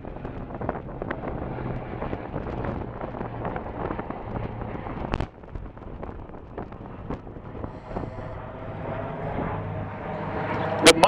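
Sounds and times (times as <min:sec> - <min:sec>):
low steady drone: 0:00.0 - 0:11.0
wind buffeting microphone: 0:00.0 - 0:11.0.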